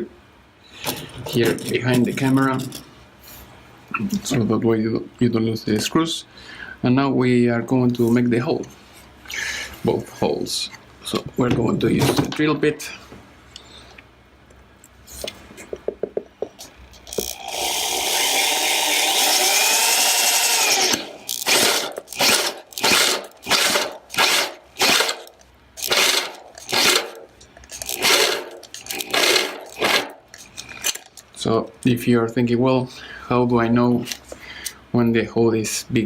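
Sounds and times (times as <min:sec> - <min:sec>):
electric drill running: 0:17.1 - 0:30.2.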